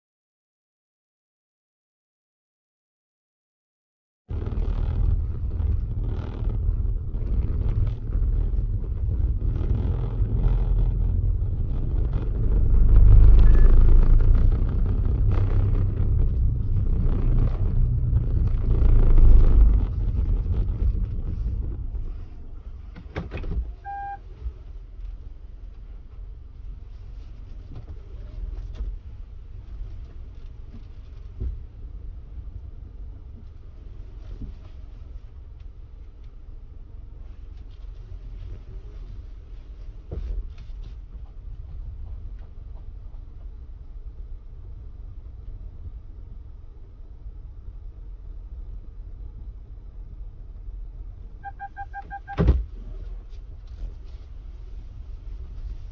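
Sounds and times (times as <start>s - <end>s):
car engine and road rumble: 4.3s - 55.9s
short electronic beep: 13.4s - 13.9s, 23.8s - 24.2s, 51.4s - 52.4s.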